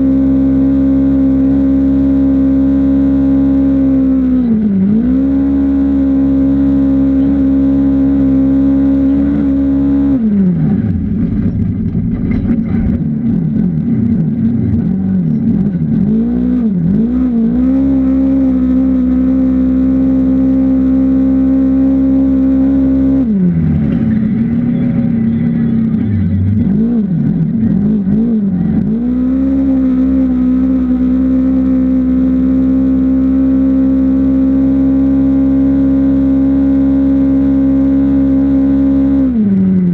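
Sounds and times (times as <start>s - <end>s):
racing vehicle engine revving: 0.0s - 39.9s.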